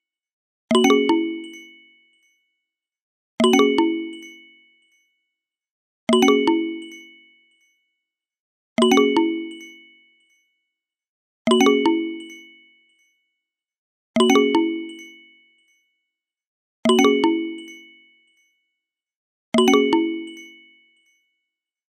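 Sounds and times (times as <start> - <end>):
bell-like chime: 16.9 - 18.7, 19.6 - 21.4.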